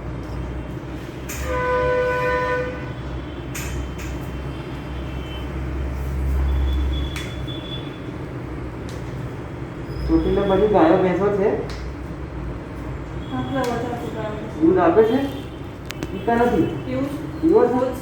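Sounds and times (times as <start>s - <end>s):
horn sounding: 1.3s - 3.2s.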